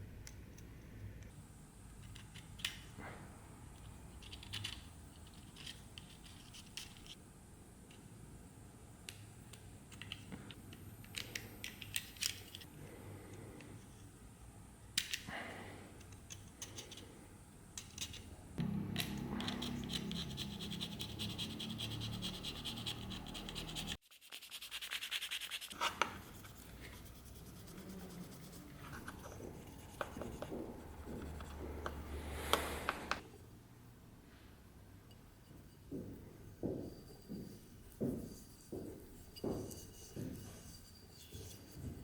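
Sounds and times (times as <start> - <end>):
tool scratching a hard surface: 19.4 - 33.2, 36.6 - 42.0.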